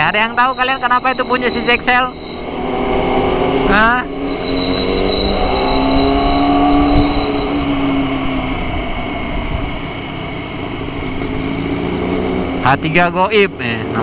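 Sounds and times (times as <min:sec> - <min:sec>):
brake squealing: 0:00.0 - 0:14.0
road and engine noise: 0:00.0 - 0:14.0.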